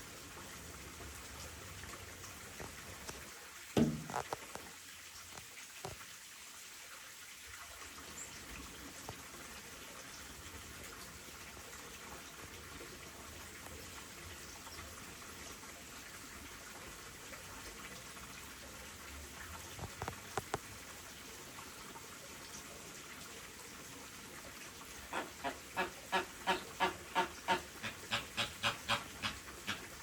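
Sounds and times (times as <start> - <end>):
trickling water: 0.0 - 30.0
flamingo honking: 25.1 - 29.8.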